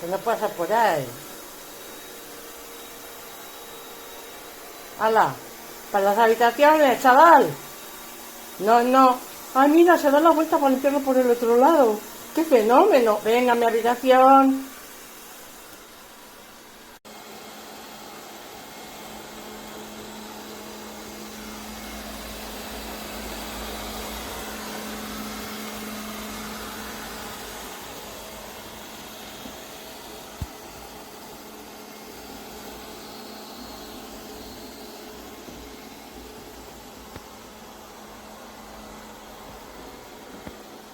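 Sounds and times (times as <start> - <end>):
robot vacuum whirring: 0.1 - 16.7.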